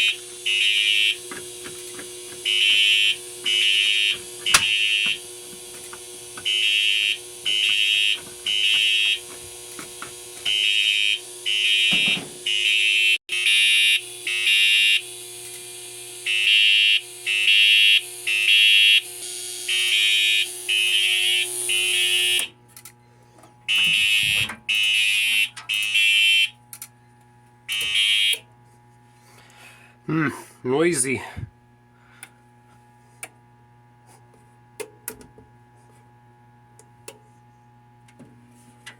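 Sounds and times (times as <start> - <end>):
fire alarm horn blasts: 0.0 - 22.6, 23.7 - 26.6, 27.6 - 28.6.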